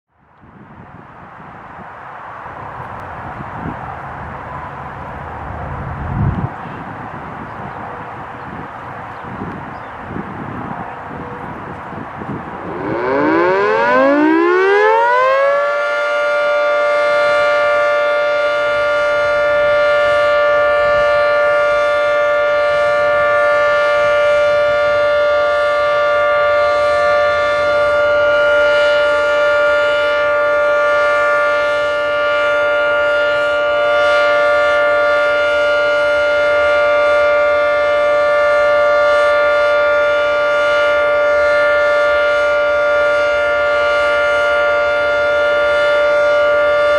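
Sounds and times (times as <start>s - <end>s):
warning siren winding up: 11.7s - 46.9s.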